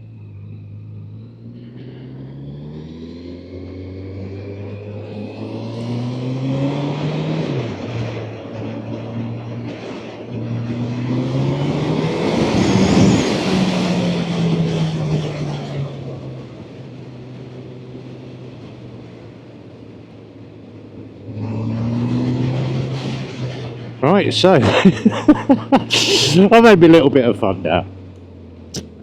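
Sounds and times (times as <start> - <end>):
motorcycle engine accelerating: 0.0 - 18.3.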